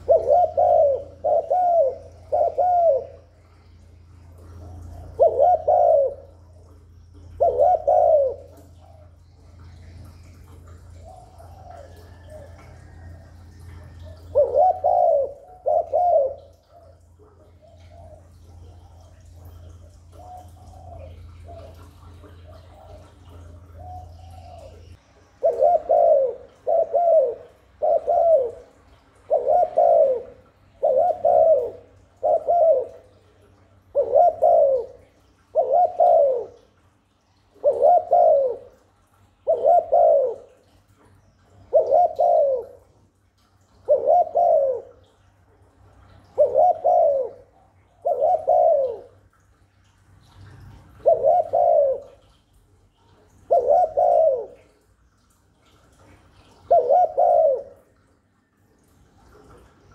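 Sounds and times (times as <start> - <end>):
dove cooing: 0.0 - 49.4, 50.3 - 52.4, 53.0 - 58.2.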